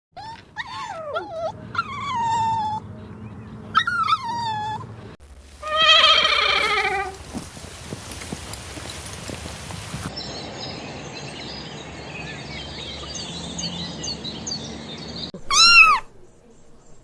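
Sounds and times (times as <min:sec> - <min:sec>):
dog whimpering: 0:00.2 - 0:02.9, 0:03.7 - 0:04.9, 0:15.4 - 0:16.1
faint outdoor noise: 0:00.2 - 0:17.0
long wavering bleat: 0:05.6 - 0:07.2.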